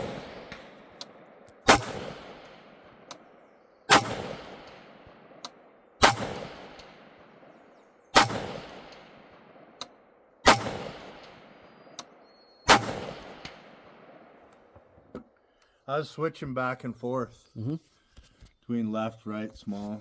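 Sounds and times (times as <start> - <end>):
bullet pinging steel target: 0.0 - 3.3, 3.9 - 7.6, 8.2 - 12.1, 12.7 - 14.0
rifle shots with rolling echo: 0.0 - 14.9.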